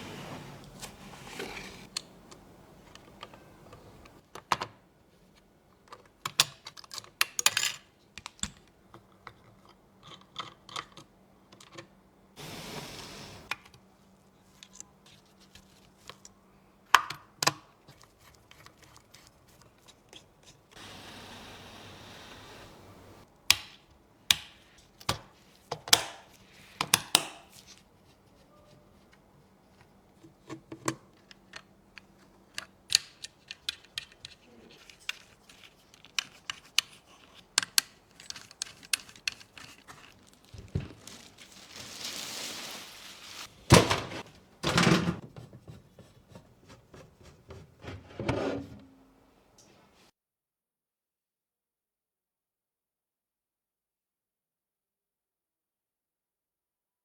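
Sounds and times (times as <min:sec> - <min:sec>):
clicks of plastic and metal parts: 0:30.5 - 0:40.1
rustle: 0:41.0 - 0:43.5.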